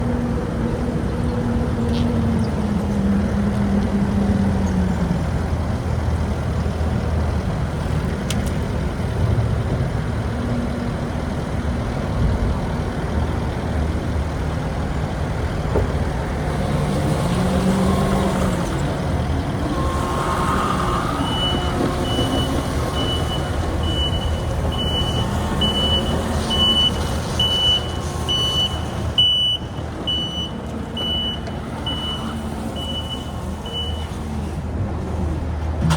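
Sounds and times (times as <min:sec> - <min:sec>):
diesel engine of skid steer: 0:00.0 - 0:35.9
backup alarm beeping: 0:21.2 - 0:34.1.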